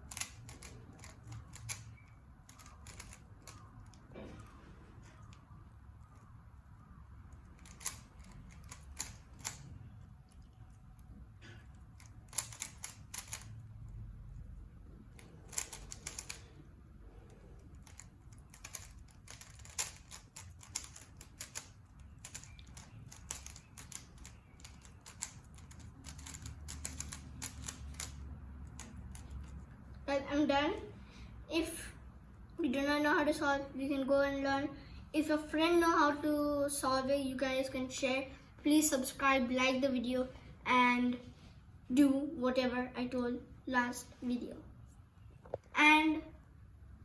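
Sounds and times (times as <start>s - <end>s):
puzzle cube plastic clicks: 0.0s - 5.4s, 7.4s - 10.7s, 11.6s - 13.7s, 15.1s - 16.6s, 17.6s - 29.6s.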